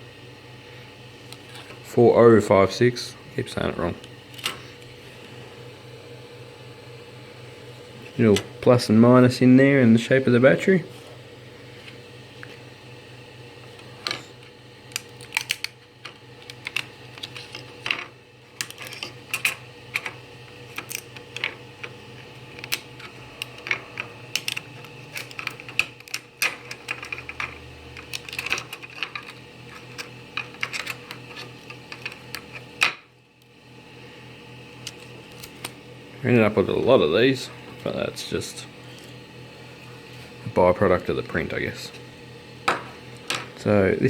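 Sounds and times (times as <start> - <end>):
steady low hum: 0.0 - 44.0.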